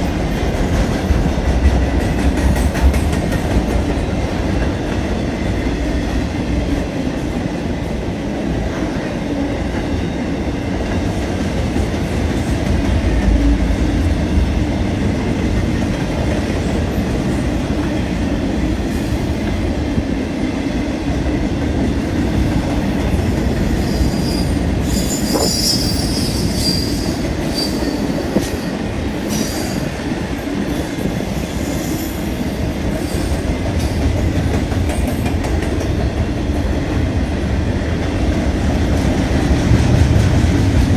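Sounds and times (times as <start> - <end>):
train wheels rumbling: 0.0 - 40.9
wheel squeal: 23.8 - 28.3.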